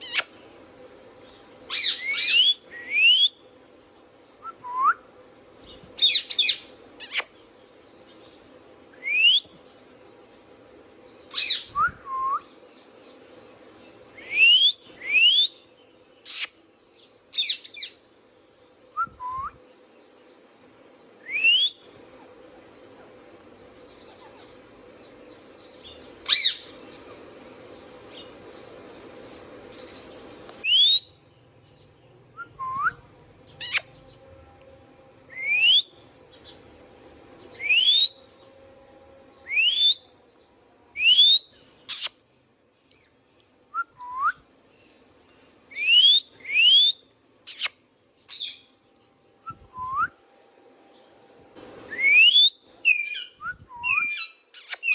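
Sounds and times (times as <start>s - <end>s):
parakeet whistled calls: 0.0s - 0.3s, 1.7s - 3.4s, 6.0s - 7.3s, 11.3s - 11.8s, 16.2s - 16.5s, 17.3s - 17.9s, 26.2s - 26.7s, 30.6s - 31.1s, 33.6s - 33.9s, 41.0s - 42.2s, 45.7s - 47.7s, 48.3s - 48.7s, 51.9s - 54.9s.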